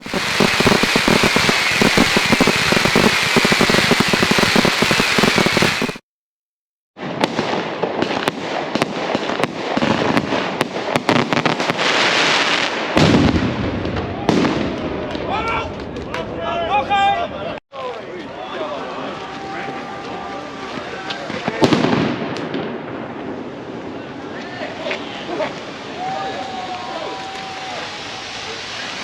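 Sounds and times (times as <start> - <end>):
firecrackers banging: 0.0 - 6.0, 19.1 - 29.0.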